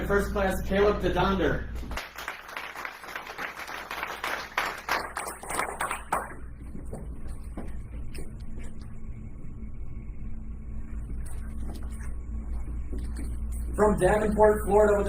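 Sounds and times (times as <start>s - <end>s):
audience applauding: 1.9s - 6.5s.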